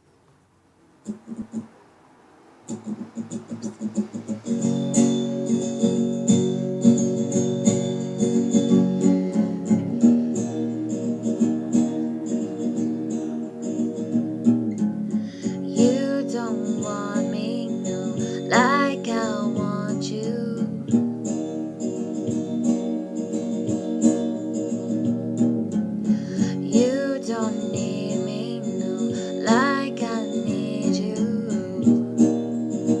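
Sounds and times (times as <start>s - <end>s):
acoustic guitar strumming: 0.9s - 33.0s
woman singing: 15.3s - 21.0s, 26.1s - 32.4s.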